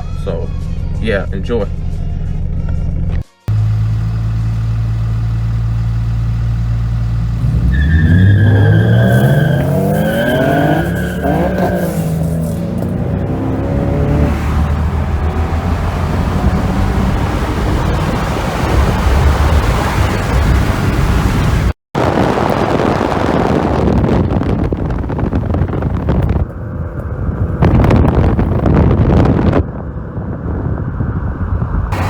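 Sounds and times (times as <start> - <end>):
road noise: 2.4 - 32.0
car engine accelerating: 2.8 - 21.8, 31.7 - 32.0.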